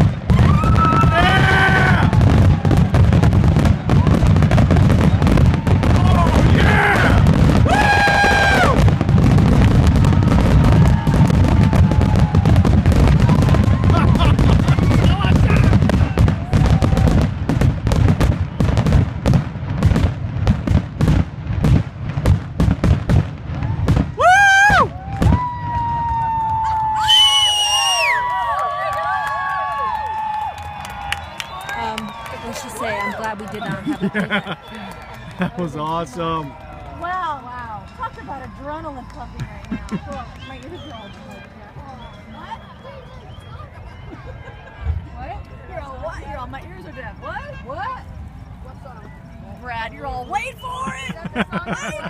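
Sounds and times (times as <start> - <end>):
fireworks bangs and crackles: 0.0 - 43.4
high-pitched whoop: 0.3 - 3.0, 5.6 - 8.8, 10.0 - 14.4, 16.4 - 17.2, 23.6 - 33.2.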